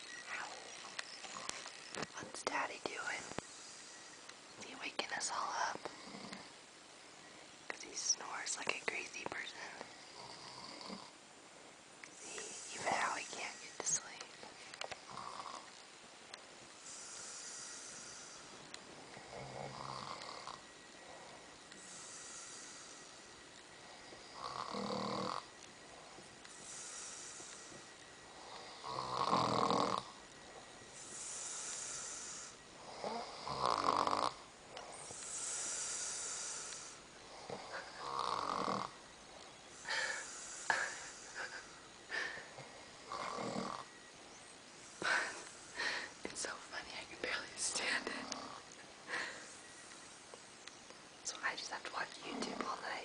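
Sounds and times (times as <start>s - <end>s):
man snoring loudly: 10.0s - 11.1s, 15.1s - 15.7s, 16.8s - 18.4s, 19.1s - 20.6s, 23.8s - 25.5s, 26.6s - 30.2s, 31.0s - 39.0s, 42.4s - 43.9s
hissing breath out: 21.8s - 23.3s, 26.5s - 28.6s, 34.8s - 38.4s, 39.7s - 42.9s, 44.8s - 46.2s, 49.0s - 50.1s.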